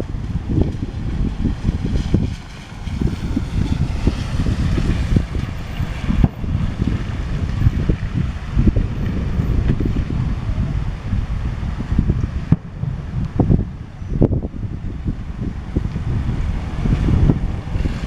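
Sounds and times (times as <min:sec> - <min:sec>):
wind buffeting microphone: 0:00.0 - 0:18.0
fireworks booming: 0:12.2 - 0:14.6.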